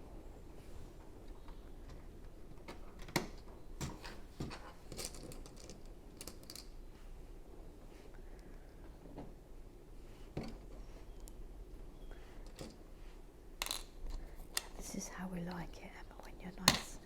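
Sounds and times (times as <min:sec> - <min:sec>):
plastic pieces clicking and clattering: 0:04.6 - 0:06.7, 0:13.6 - 0:14.8.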